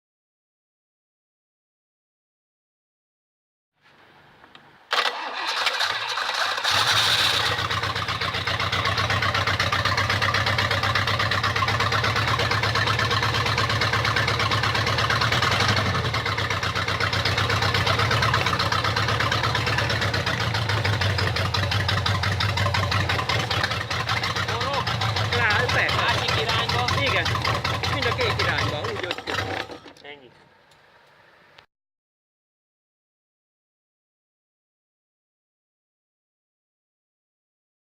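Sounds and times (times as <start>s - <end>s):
boat engine starter cranking: 4.9s - 7.8s, 17.8s - 30.1s
boat engine idling: 6.6s - 29.9s.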